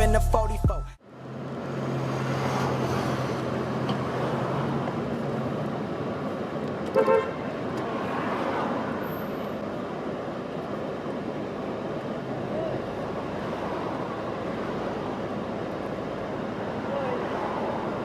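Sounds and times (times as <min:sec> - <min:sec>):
street traffic hum: 0:00.0 - 0:18.0
car horn toot: 0:06.9 - 0:07.4.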